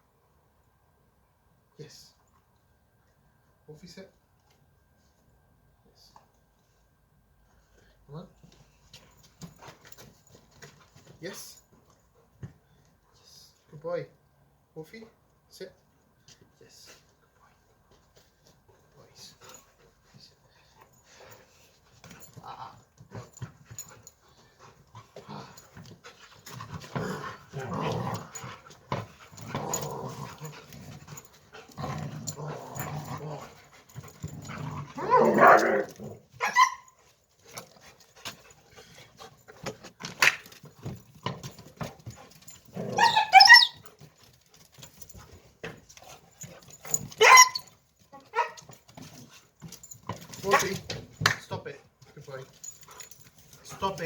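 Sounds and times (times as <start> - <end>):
dogs growling: 26.6 - 36.3
dog yelping: 35.0 - 37.0, 42.8 - 43.8, 47.2 - 48.6.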